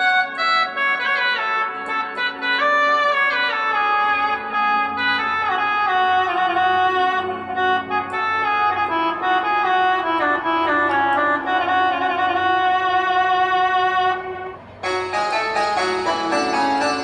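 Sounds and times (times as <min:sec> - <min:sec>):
keyboard playing a melody: 0:00.0 - 0:17.0
brighter keyboard tone: 0:14.8 - 0:17.0.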